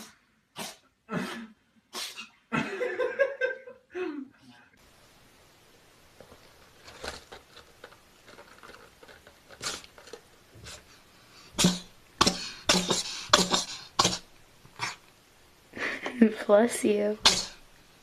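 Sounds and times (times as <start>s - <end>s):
cat sneezing: 0.0s - 2.4s, 9.6s - 9.8s, 11.5s - 15.0s, 17.2s - 17.6s.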